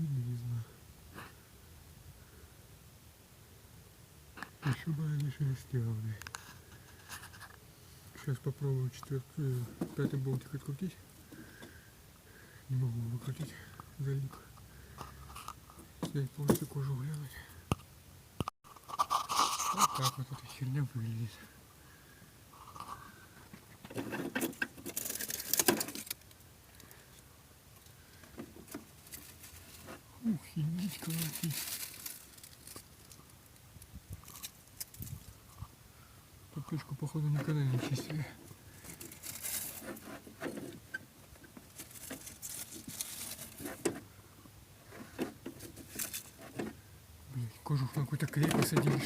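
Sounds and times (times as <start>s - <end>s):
plastic parts rattling and scraping: 22.6s - 26.3s, 28.1s - 30.1s, 30.7s - 33.4s, 37.2s - 44.1s, 44.8s - 46.8s, 48.0s - 49.0s
plastic rustling: 23.9s - 26.3s, 28.3s - 33.6s, 37.8s - 40.8s, 41.4s - 44.0s.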